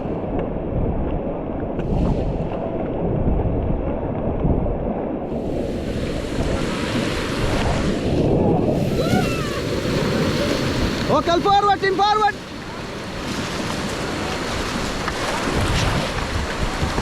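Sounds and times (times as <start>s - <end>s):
wind buffeting microphone: 0.0s - 17.0s
rushing river water: 5.2s - 17.0s.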